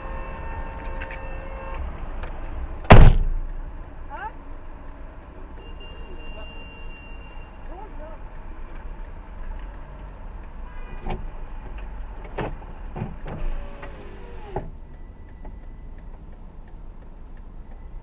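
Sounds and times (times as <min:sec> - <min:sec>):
car engine rumble: 0:07.4 - 0:18.0.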